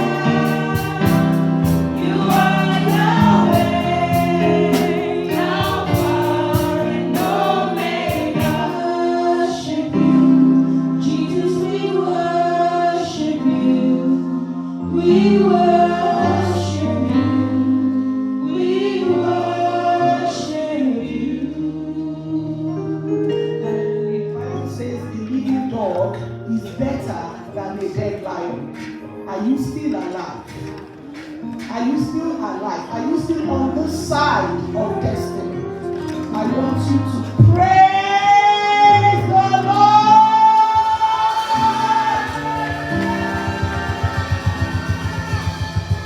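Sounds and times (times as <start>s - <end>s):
even percussion beat: 0.0s - 8.8s, 40.6s - 46.0s
instrumental accompaniment: 0.0s - 12.9s, 23.1s - 46.0s
choir singing gospel music: 0.0s - 46.0s.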